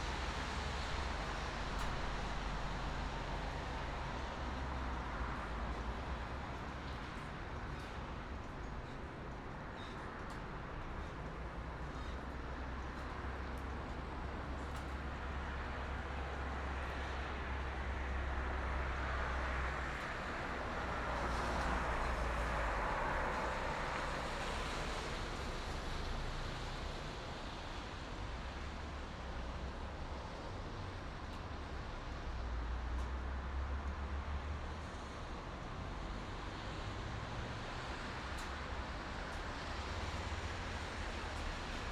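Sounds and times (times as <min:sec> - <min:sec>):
highway traffic: 0:00.0 - 0:41.9.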